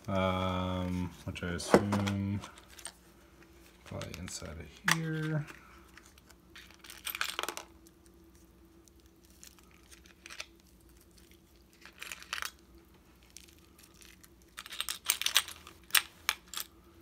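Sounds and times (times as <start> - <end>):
plastic case being opened: 1.6 - 3.0
small bits clicking and rattling: 11.7 - 12.6, 13.3 - 16.7.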